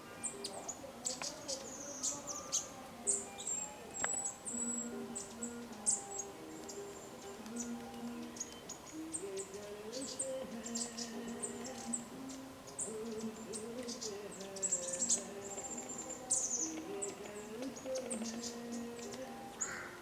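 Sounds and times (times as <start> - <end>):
small birds chirping and trilling: 0.0 - 20.0
soft slow melody: 0.0 - 20.0.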